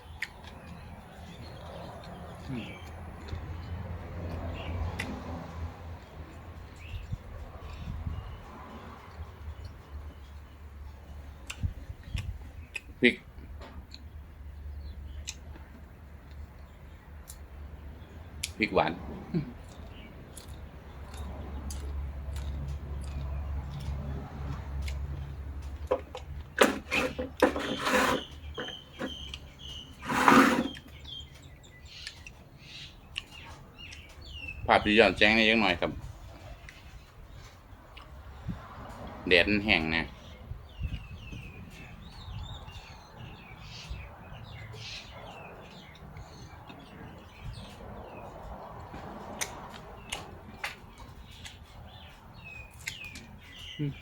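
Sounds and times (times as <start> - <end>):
birds chirping: 0.0 - 5.2, 6.0 - 54.0
handling knocks and clicks: 25.6 - 27.9.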